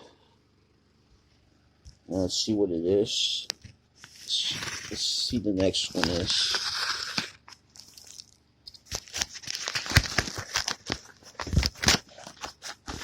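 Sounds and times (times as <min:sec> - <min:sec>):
packaging crackling and rustling: 0:04.0 - 0:13.0.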